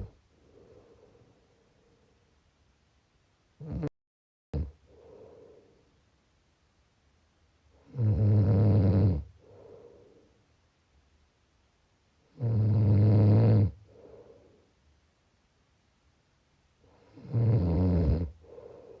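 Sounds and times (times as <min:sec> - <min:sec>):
soft breath out: 0:00.3 - 0:02.3, 0:04.8 - 0:06.0, 0:09.3 - 0:10.5, 0:13.8 - 0:14.8, 0:18.4 - 0:19.0
person snoring: 0:03.6 - 0:03.9, 0:07.8 - 0:09.8, 0:12.4 - 0:14.3, 0:17.0 - 0:19.0.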